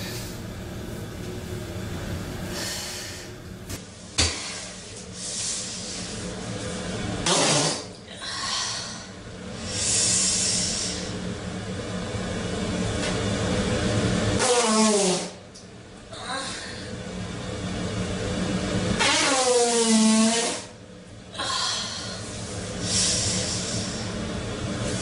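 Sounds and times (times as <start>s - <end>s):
short loud fart: 7.2s - 8.0s, 19.0s - 20.7s.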